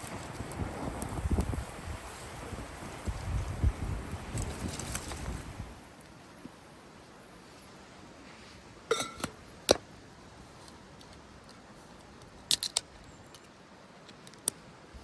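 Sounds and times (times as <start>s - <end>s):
metal cookware clinking: 8.9s - 9.4s.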